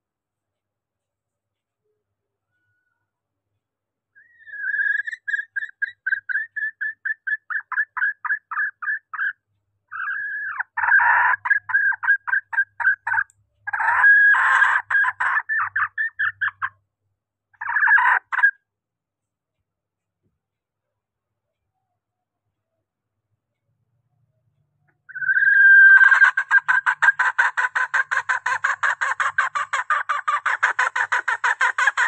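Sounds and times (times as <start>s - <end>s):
hen clucking rapidly: 4.3s - 16.8s, 17.6s - 18.5s, 25.0s - 32.0s.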